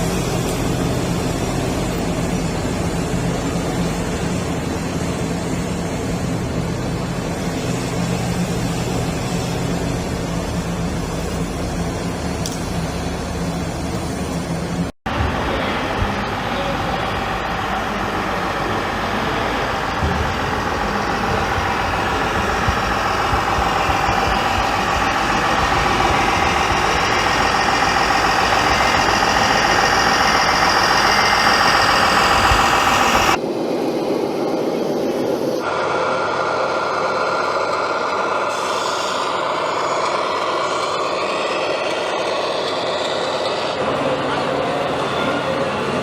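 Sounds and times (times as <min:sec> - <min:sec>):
truck engine running: 0:00.0 - 0:33.4, 0:35.6 - 0:46.0
quieter engine: 0:00.0 - 0:46.0.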